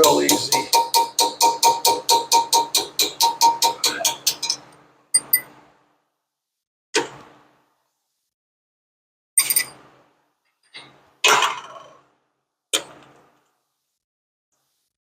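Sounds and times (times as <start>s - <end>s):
hammer striking metal pin: 0.0s - 4.6s.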